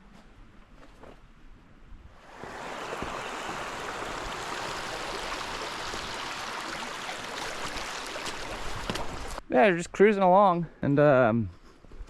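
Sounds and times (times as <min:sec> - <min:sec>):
creek water running and splashing: 0:02.2 - 0:09.4.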